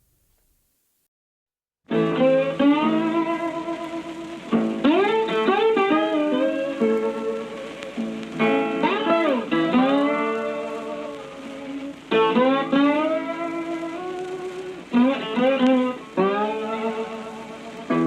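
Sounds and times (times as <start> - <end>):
slide blues guitar: 1.9 - 18.0.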